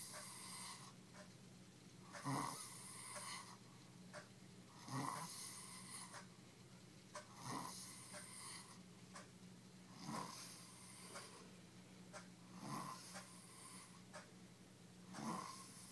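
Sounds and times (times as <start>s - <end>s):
person snoring: 2.2s - 3.6s, 4.8s - 6.2s, 7.3s - 8.8s, 9.9s - 11.3s, 12.5s - 14.0s, 15.2s - 15.9s.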